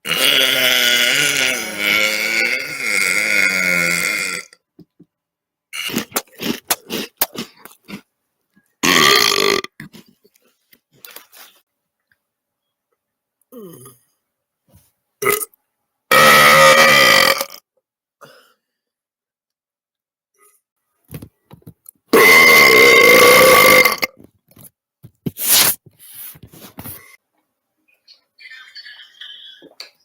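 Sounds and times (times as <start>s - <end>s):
person burping: 0.0s - 4.6s, 5.8s - 8.0s, 8.8s - 10.1s, 13.5s - 14.2s, 15.2s - 15.5s, 16.1s - 18.5s, 22.1s - 24.2s.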